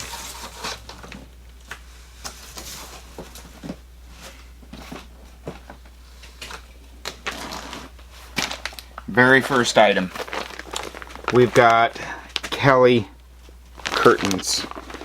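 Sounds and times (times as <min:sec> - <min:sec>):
packages knocking and rustling: 0:00.0 - 0:12.7, 0:13.4 - 0:15.0
steady low hum: 0:00.0 - 0:15.0.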